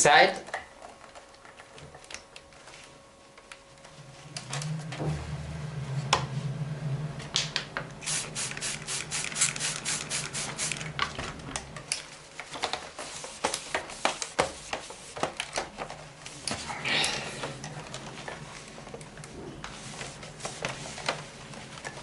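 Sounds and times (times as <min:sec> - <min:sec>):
low hum: 0:03.8 - 0:12.0
paper towel wiping plastic: 0:08.0 - 0:15.4, 0:19.5 - 0:22.0.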